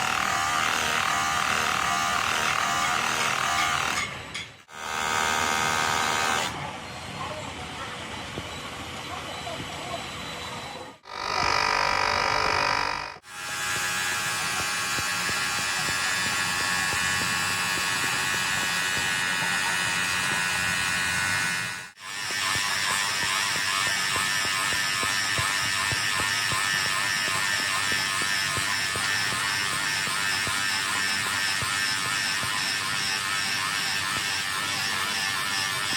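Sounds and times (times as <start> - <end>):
electric motors whining: 0.0 - 35.9.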